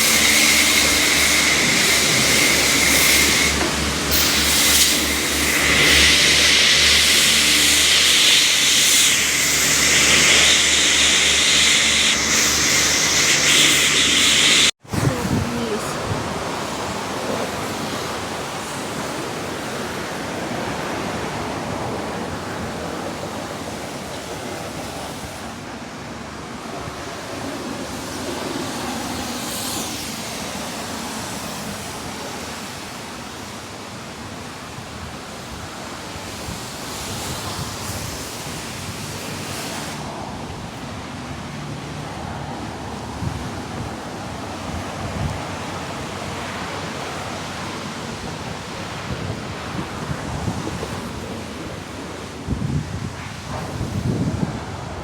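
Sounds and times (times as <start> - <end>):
high-pressure water spray hissing: 0.0 - 21.5, 27.0 - 54.8.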